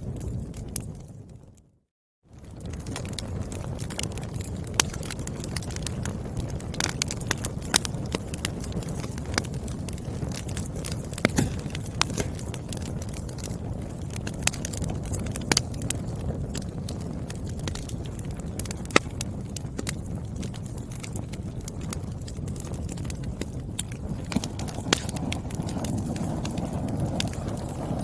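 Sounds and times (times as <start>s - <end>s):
wood fire crackling: 0.0s - 1.7s, 2.3s - 28.0s.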